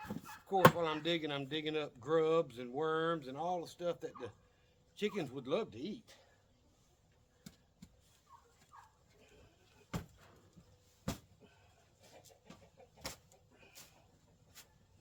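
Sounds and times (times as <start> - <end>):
chickens clucking: 0.0 - 1.1, 3.9 - 4.4, 5.0 - 5.4, 11.6 - 14.8.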